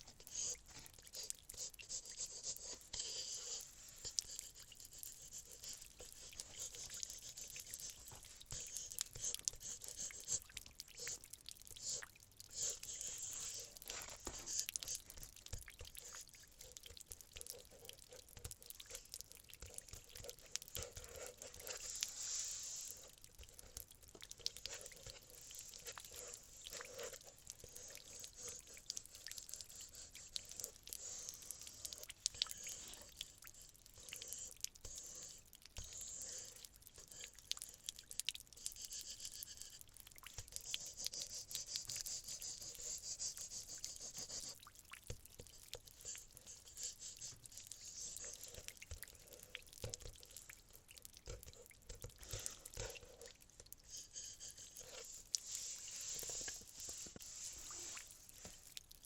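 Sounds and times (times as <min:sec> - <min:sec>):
paintbrush swishing on canvas: 0:54.4 - 0:58.6.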